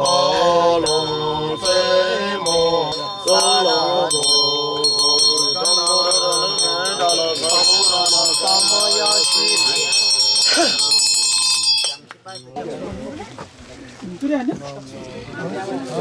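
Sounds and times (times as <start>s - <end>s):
person chanting: 0.0s - 11.0s
small bell ringing rapidly: 0.0s - 12.5s.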